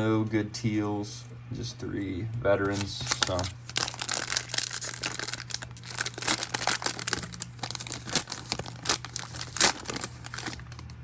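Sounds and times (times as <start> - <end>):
plastic wrapper tearing and crinkling: 2.6 - 11.0.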